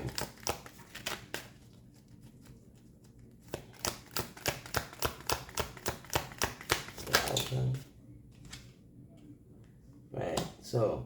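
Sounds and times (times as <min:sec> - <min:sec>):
cards clicking: 0:00.0 - 0:01.5, 0:03.4 - 0:07.4.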